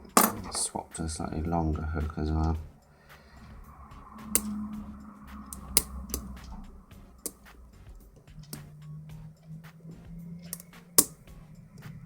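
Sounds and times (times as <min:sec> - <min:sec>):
lock picking metallic clicks: 0:00.0 - 0:00.6, 0:04.2 - 0:09.6, 0:10.4 - 0:11.9.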